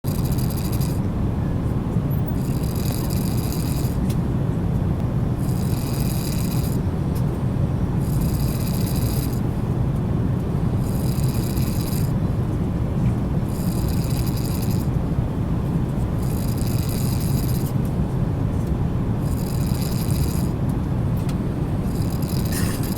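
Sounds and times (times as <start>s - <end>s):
man snoring: 0.1s - 1.0s, 2.4s - 4.0s, 5.4s - 6.8s, 8.0s - 9.4s, 10.8s - 12.2s, 13.5s - 14.9s, 16.2s - 17.6s, 19.2s - 20.6s, 21.9s - 22.9s
airliner cabin rumble: 20.6s - 22.9s.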